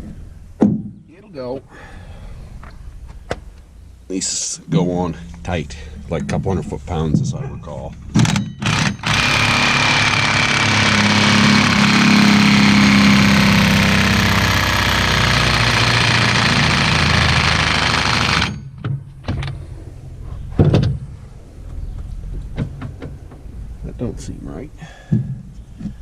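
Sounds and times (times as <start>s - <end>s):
impact wrench hammering: 8.1s - 18.9s.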